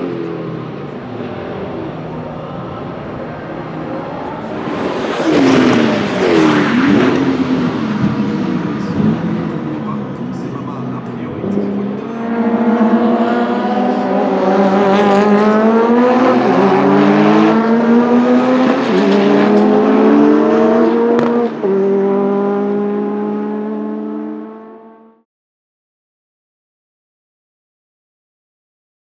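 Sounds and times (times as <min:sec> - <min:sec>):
car engine accelerating through gears: 0:03.1 - 0:10.6, 0:11.3 - 0:25.2.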